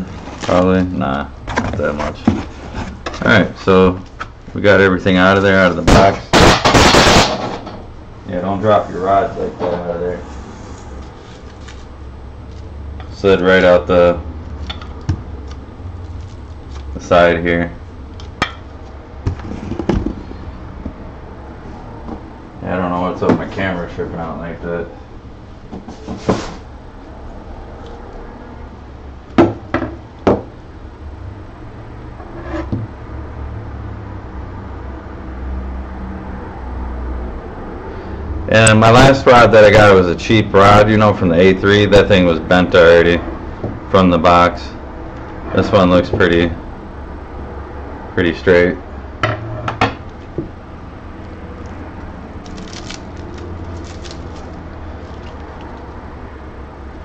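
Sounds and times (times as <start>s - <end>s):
steady low hum: 0.0s - 57.0s
packaging rustling and crackling: 52.3s - 56.0s.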